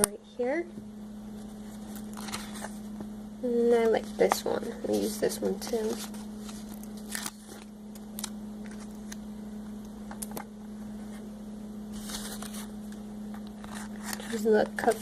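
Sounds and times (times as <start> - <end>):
steady low hum: 0.0 - 15.0
paper rustle: 1.7 - 2.8, 4.9 - 7.7, 11.9 - 12.7, 13.6 - 15.0.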